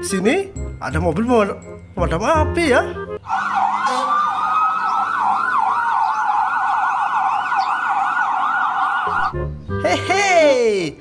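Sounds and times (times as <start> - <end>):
fire engine siren yelping: 3.2 - 9.4
siren wail: 3.2 - 9.4.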